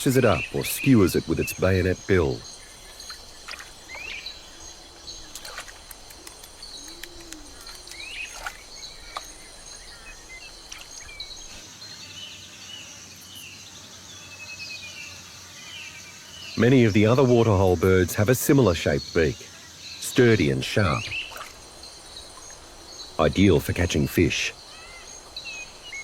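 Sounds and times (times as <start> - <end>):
bird chirps: 0.0 - 11.6, 20.2 - 26.0
low calls: 0.0 - 11.6, 20.1 - 26.0
insects trilling: 0.0 - 26.0.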